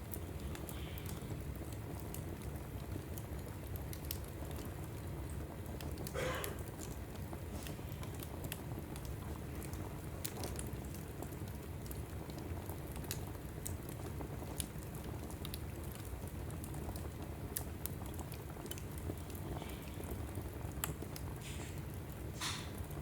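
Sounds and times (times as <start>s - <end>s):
fire crackling and popping: 0.0s - 23.0s
low rumble of flames: 0.0s - 23.0s
brief hiss: 22.4s - 22.8s.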